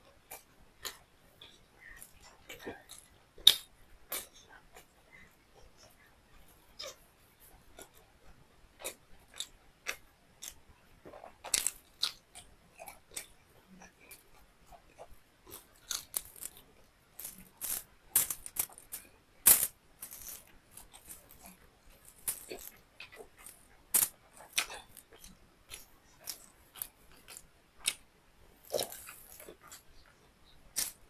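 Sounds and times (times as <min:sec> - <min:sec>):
person chewing food: 0:00.1 - 0:31.0.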